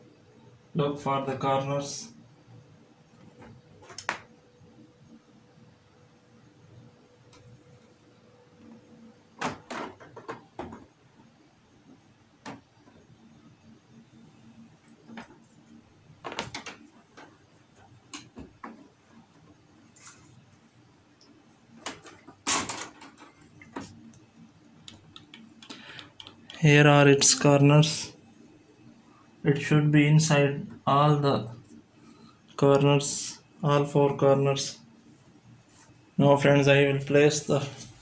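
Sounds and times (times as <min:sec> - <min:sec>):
plastic clicks and knocks: 0:09.4 - 0:10.9.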